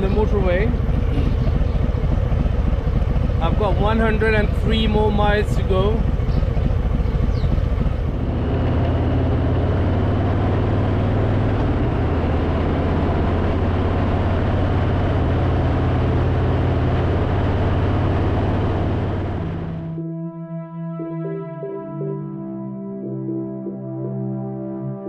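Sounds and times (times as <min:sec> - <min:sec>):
wind and road noise: 0:00.0 - 0:19.9
motorcycle engine running: 0:00.0 - 0:20.0.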